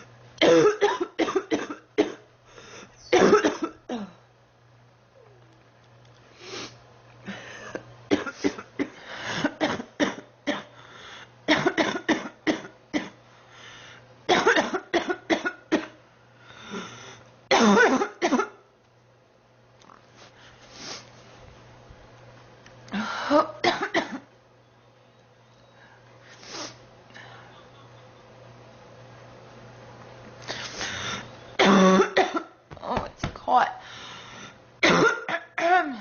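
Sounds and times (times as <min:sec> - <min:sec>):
woman coughing: 0:00.4 - 0:02.3, 0:03.1 - 0:04.2, 0:07.7 - 0:10.7, 0:11.5 - 0:13.2, 0:14.3 - 0:16.0, 0:17.5 - 0:18.6, 0:23.3 - 0:24.3, 0:31.6 - 0:32.6, 0:34.8 - 0:36.0.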